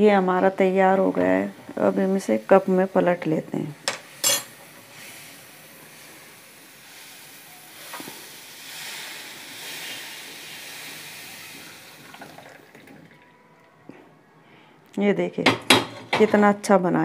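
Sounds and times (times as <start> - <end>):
water sizzling on hot iron: 0.0 - 13.2.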